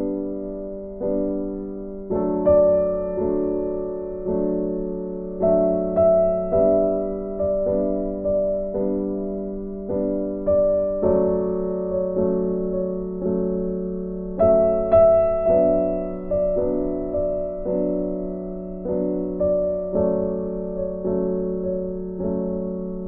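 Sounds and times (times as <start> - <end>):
soft piano chords: 0.0 - 23.0.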